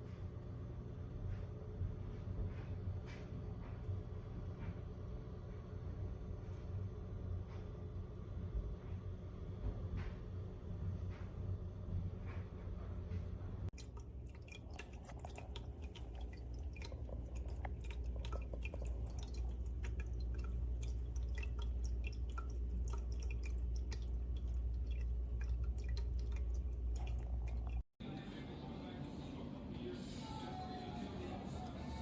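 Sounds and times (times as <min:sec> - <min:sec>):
steady low hum: 0:00.0 - 0:32.0
fountain water trickling: 0:13.8 - 0:27.9.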